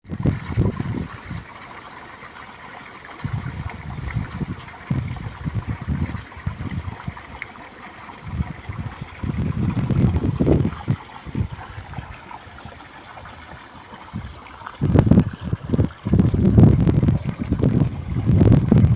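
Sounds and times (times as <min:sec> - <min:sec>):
stream trickling and gurgling: 0:00.0 - 0:18.9
low rumbles: 0:08.2 - 0:11.9.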